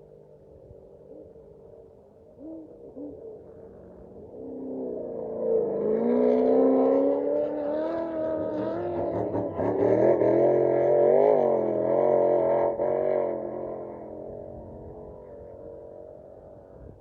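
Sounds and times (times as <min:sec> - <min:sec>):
off-road vehicle engine revving: 0:04.2 - 0:15.5.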